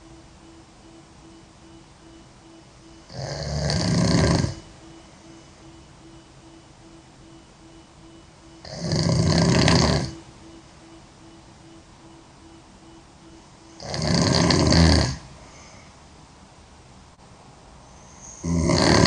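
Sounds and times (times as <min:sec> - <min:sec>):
girl snoring loudly: 0:03.1 - 0:04.6, 0:08.6 - 0:10.2, 0:13.8 - 0:15.3, 0:18.4 - 0:19.0.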